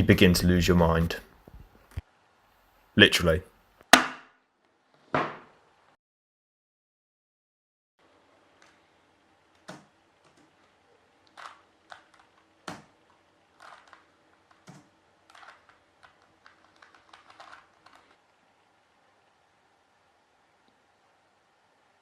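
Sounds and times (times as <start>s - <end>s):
plastic puzzle cube clicking: 9.6s - 12.9s, 13.5s - 18.2s.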